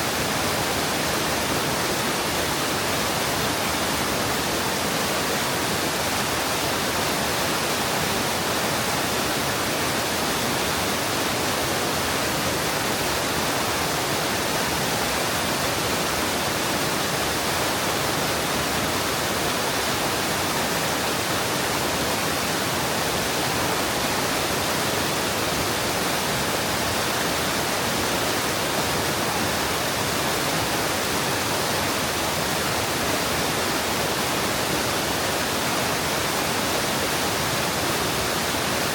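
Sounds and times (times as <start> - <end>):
water rushing down rocky stream: 0.0 - 38.9.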